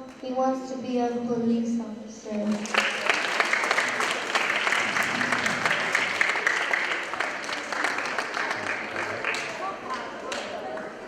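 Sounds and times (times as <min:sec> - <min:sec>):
audience applauding: 0:02.5 - 0:11.0.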